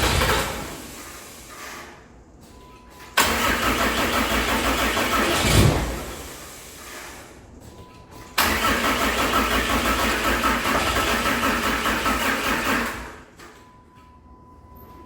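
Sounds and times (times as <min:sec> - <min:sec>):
diesel engine cranking on starter: 0:00.0 - 0:02.0, 0:03.2 - 0:07.4, 0:08.4 - 0:13.4.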